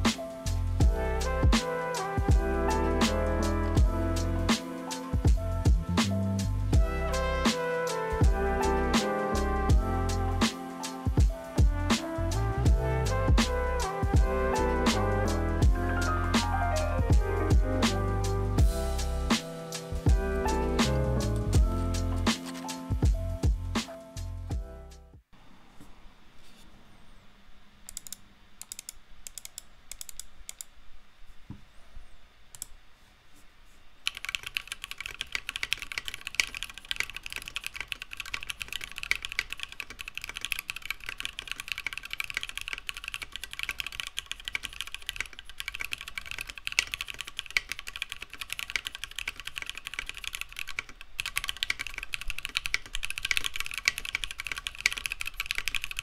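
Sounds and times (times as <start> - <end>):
mechanical keyboard typing: 22.3 - 23.0, 34.1 - 56.0.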